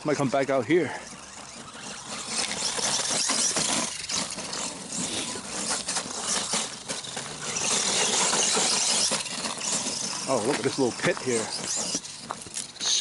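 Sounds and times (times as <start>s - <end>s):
rc truck tyres crunching on gravel: 0.0s - 13.0s.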